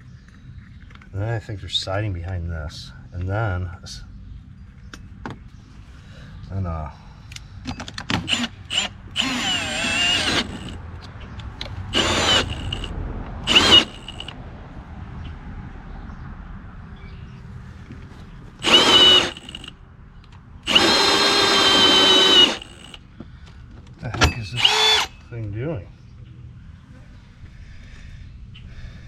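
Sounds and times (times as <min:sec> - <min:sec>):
cordless drill boring through siding: 0:08.2 - 0:10.8, 0:11.9 - 0:14.4, 0:18.6 - 0:19.7, 0:20.6 - 0:23.0, 0:24.6 - 0:25.2.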